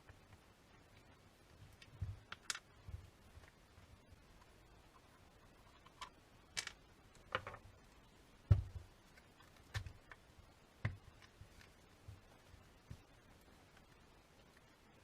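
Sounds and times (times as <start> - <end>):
small hard parts clicking: 1.7 - 2.8, 5.0 - 7.6
heavy thump: 8.5 - 8.9.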